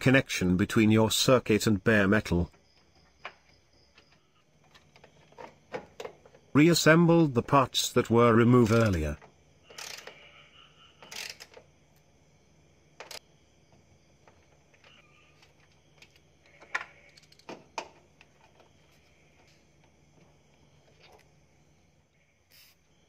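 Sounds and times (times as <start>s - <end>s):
tools and car parts clicking: 8.6s - 10.2s, 11.0s - 11.7s, 13.0s - 13.2s, 14.2s - 18.7s.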